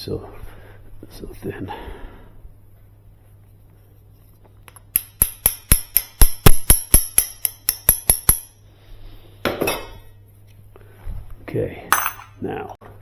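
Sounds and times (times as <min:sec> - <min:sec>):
ringing metallic taps on tool: 0:04.7 - 0:08.6, 0:11.9 - 0:12.4.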